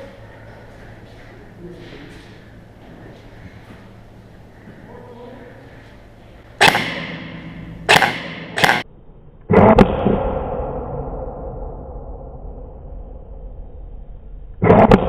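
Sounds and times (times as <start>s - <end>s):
airsoft guns firing: 6.6s - 8.8s.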